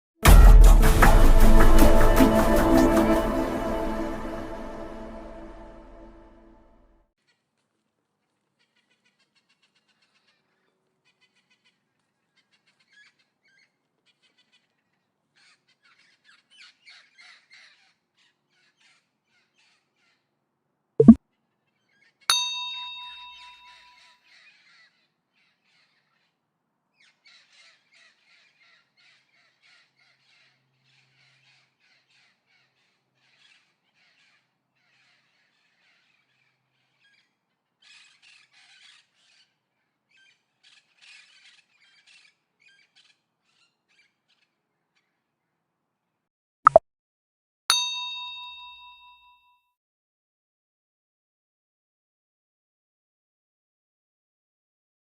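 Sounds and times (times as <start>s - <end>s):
bright metallic ding: 22.3s - 24.0s, 47.7s - 49.5s.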